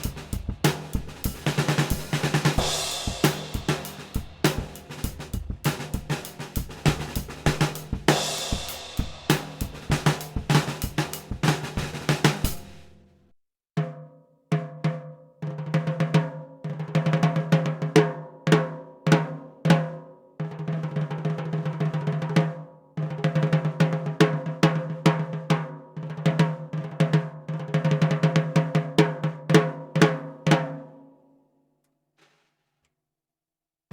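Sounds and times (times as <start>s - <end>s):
snare drum strokes: 0.0s - 12.9s
drum kit groove: 0.0s - 13.0s.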